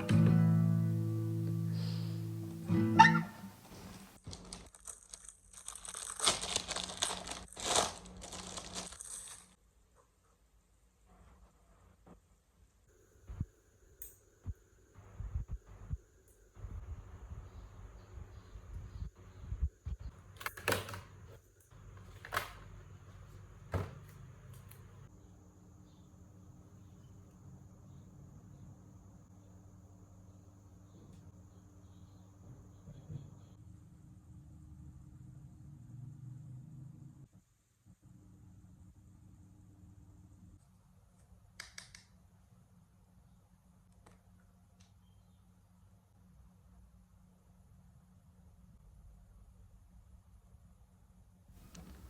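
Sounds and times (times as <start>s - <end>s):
plucked guitar chord: 0.0s - 3.6s
soft rustling and crinkling: 3.6s - 9.6s, 51.6s - 52.0s.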